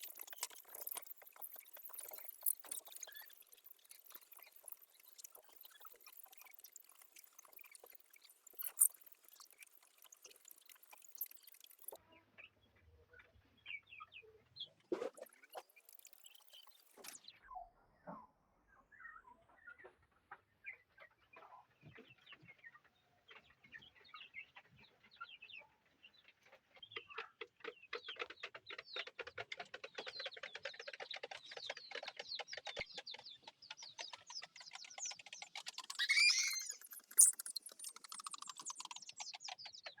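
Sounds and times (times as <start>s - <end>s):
chickens clucking: 35.6s - 39.2s
chicken drawn-out call: 36.0s - 36.8s.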